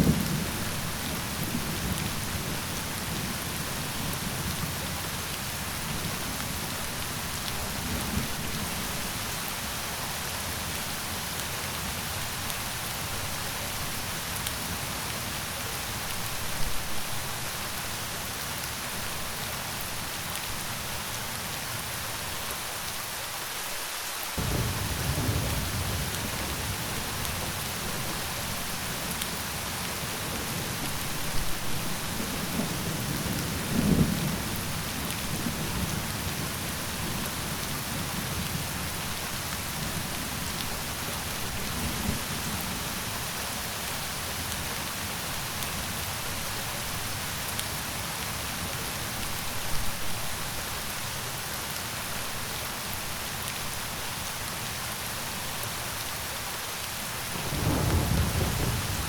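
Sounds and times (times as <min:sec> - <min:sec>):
steady rain: 0:00.0 - 0:59.0
rolling thunder: 0:24.4 - 0:28.0, 0:57.4 - 0:59.0.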